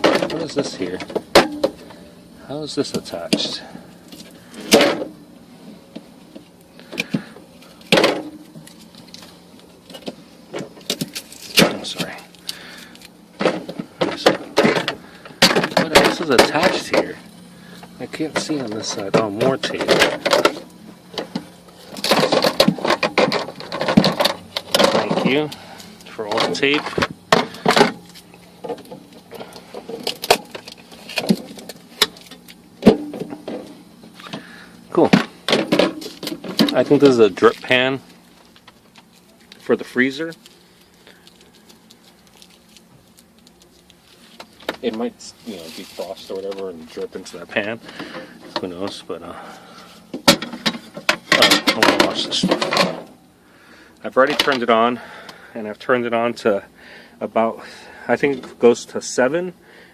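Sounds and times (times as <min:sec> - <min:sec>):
knocks and clatter of loose part: 0:13.4 - 0:17.0, 0:18.4 - 0:25.4, 0:50.1 - 0:53.1.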